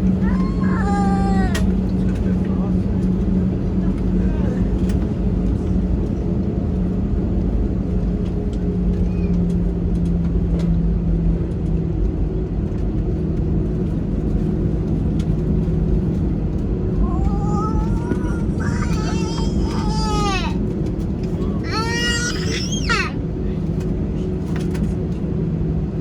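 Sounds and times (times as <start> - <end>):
airplane cabin engine drone: 0.0 - 26.0
young child crying: 0.1 - 1.8, 17.0 - 20.7, 21.6 - 23.2.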